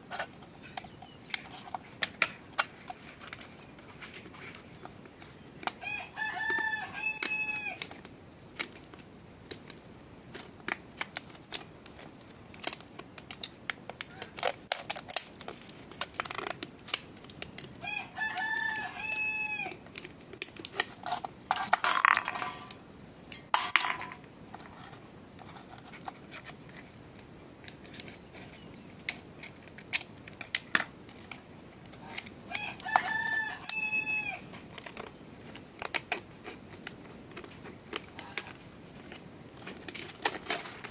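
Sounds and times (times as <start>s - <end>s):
rooster crowing: 5.8s - 7.8s, 17.8s - 19.8s, 32.5s - 34.4s.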